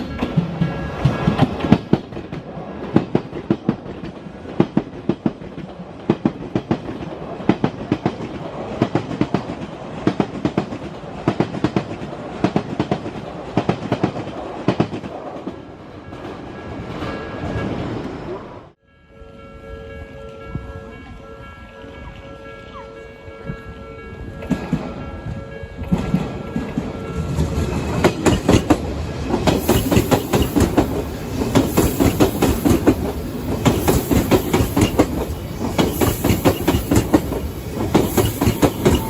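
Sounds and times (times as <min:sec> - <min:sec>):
level crossing warning bell: 0:18.8 - 0:27.8
train wheels clattering over rail joints: 0:25.9 - 0:39.0.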